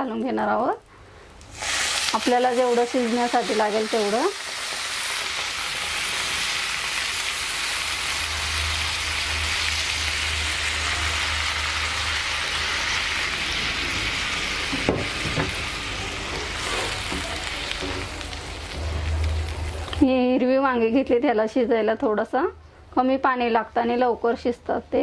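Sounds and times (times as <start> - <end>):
food sizzling in hot oil: 1.5 - 20.0.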